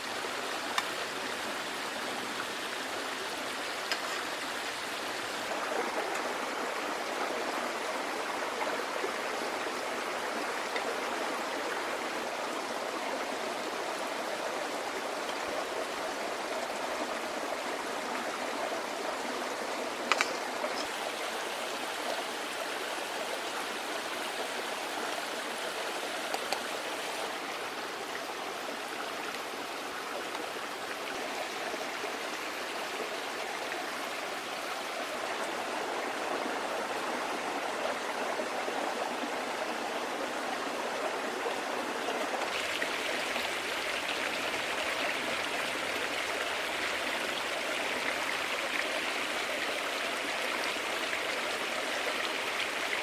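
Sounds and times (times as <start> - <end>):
creek babbling: 0.0 - 53.0
faint clicks: 20.0 - 20.9, 26.3 - 26.7.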